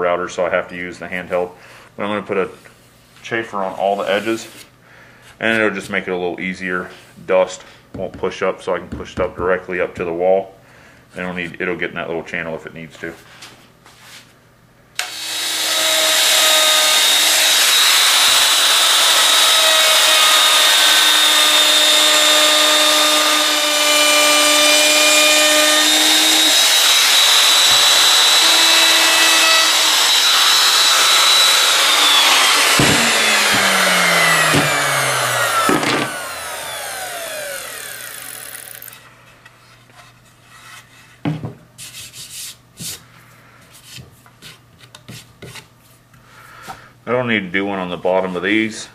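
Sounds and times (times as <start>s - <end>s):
router spinning down: 15.0s - 39.0s
router whining while cutting wood: 15.0s - 39.0s.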